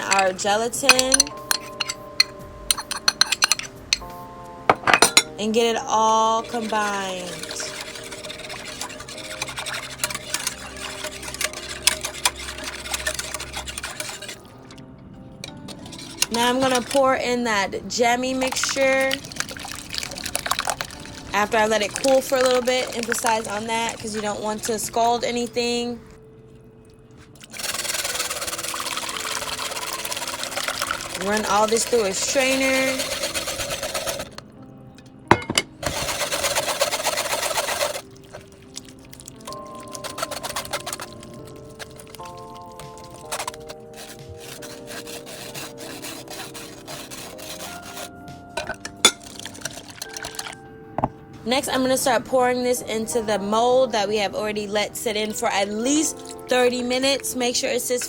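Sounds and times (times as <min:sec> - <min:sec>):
utensil scraping a saucepan: 0:00.0 - 0:04.1, 0:04.7 - 0:14.8, 0:15.4 - 0:17.4, 0:18.0 - 0:26.2, 0:27.4 - 0:34.4, 0:35.3 - 0:50.6
liquid pouring through strainer: 0:06.4 - 0:14.8, 0:18.4 - 0:24.8, 0:27.3 - 0:34.4, 0:35.8 - 0:48.3, 0:49.0 - 0:50.6.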